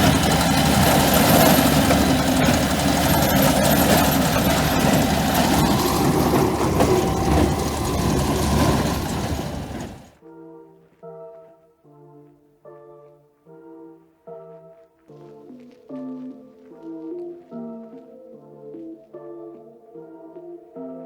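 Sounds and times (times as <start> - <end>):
tractor engine running: 0.0 - 10.2.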